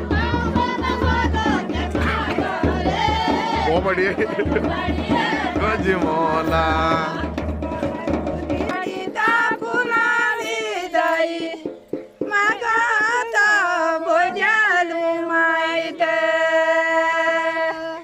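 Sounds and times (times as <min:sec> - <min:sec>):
low drum beat: 0:00.0 - 0:10.3
high voice singing folk song: 0:00.0 - 0:18.0.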